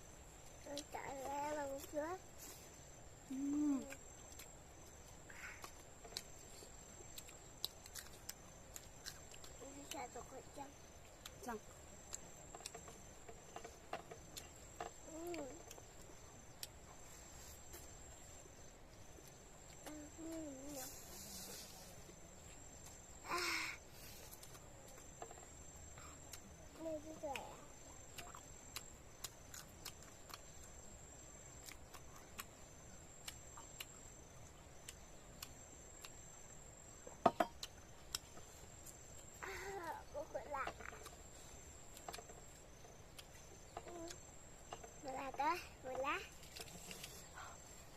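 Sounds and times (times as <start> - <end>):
cricket trilling: 0.0 - 47.9
person humming: 3.3 - 4.0.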